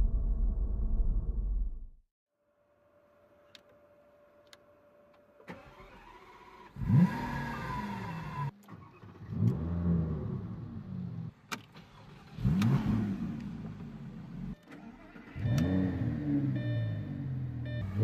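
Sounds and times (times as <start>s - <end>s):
car engine revving: 5.6s - 8.5s, 9.1s - 18.0s.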